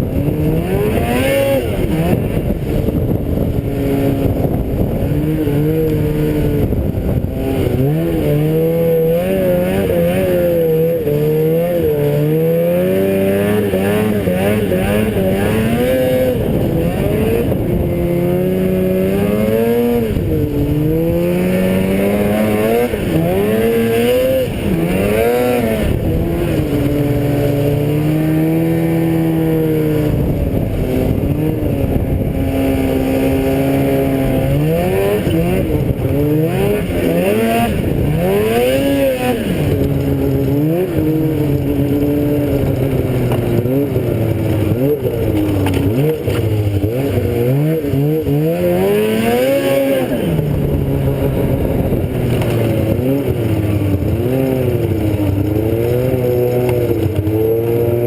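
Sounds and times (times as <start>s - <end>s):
vehicle engine revving: 0.0s - 58.0s.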